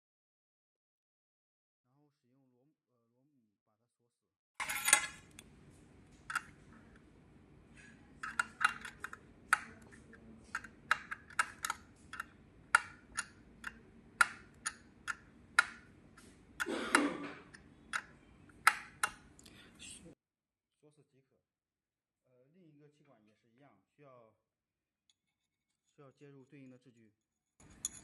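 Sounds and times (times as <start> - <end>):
clicks and taps of small parts: 6.2 - 7.0, 8.2 - 16.7, 17.4 - 19.5.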